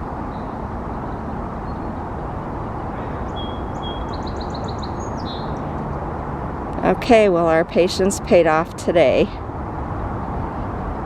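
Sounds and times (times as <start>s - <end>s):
distant road traffic rumble: 0.0s - 11.0s
small bird singing: 3.0s - 5.8s.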